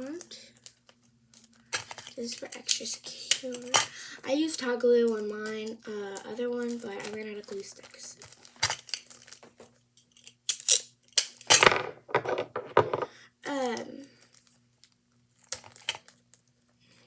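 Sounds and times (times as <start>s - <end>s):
plastic bag crinkling: 0.0s - 10.3s, 15.3s - 16.5s.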